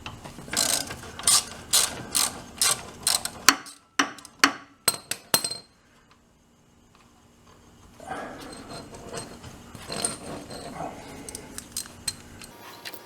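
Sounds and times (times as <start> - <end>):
ratchet wrench clicking: 0.5 - 4.3.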